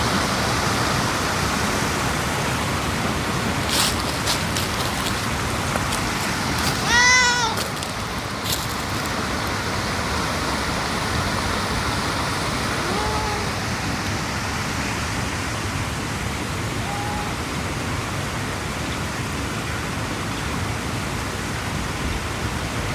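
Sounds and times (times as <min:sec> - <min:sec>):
steady rushing noise: 0:00.0 - 0:16.7.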